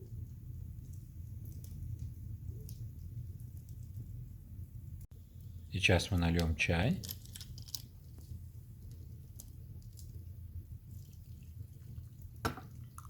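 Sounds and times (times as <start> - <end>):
tea pouring into a cup: 8.8 - 13.0.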